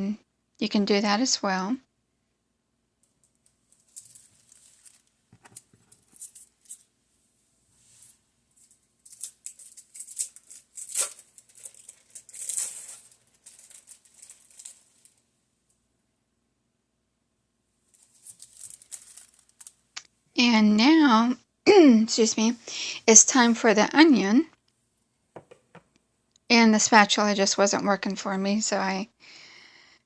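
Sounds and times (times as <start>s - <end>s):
packaging crinkling: 3.1s - 6.9s, 8.0s - 15.2s, 17.9s - 19.9s.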